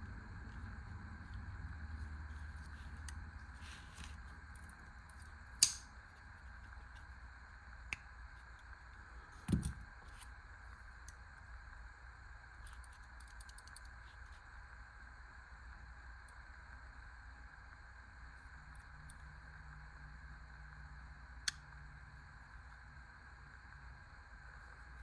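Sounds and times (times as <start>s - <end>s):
pocket knife metal clicks: 5.6s - 5.9s
dull thump: 9.5s - 9.8s.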